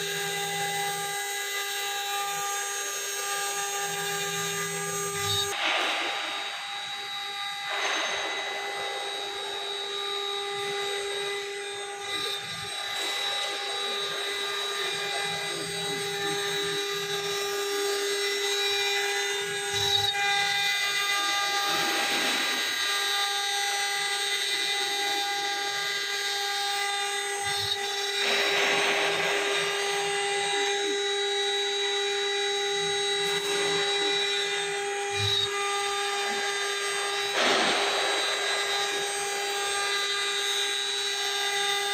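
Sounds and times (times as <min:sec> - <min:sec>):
router spindle whine: 0:00.0 - 0:41.9
cutting noise surges: 0:28.0 - 0:41.0.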